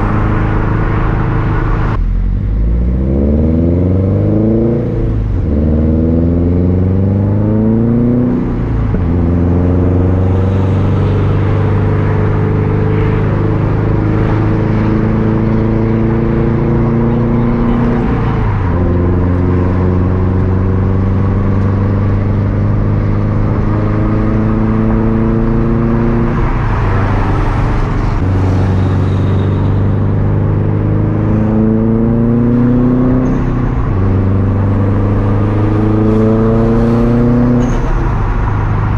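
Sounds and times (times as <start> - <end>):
car engine revving through upshifts: 0.0 - 29.2, 29.8 - 38.3.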